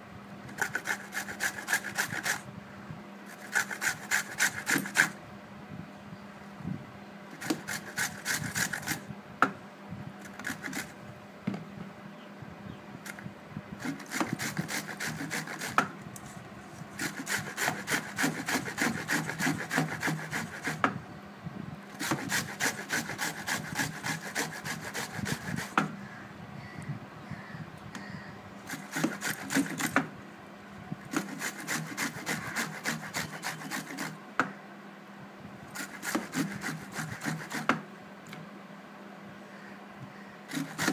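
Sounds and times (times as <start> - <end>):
mango grating on a grater: 0.5 - 2.5, 3.3 - 5.2, 7.3 - 9.1, 10.2 - 11.0, 13.8 - 15.9, 17.0 - 20.9, 22.0 - 25.9, 28.6 - 30.1, 31.1 - 34.2, 35.7 - 37.8, 40.5 - 40.9.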